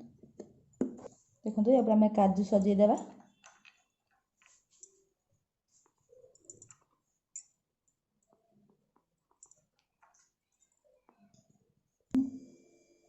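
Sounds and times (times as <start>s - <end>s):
faint clicks and light taps: 5.7s - 11.6s.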